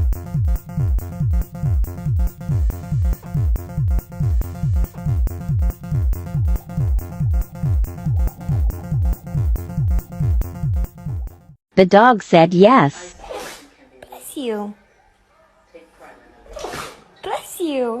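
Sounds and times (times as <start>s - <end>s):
fast bass drum beat: 0.0s - 11.5s
synthesizer tones: 0.0s - 11.6s.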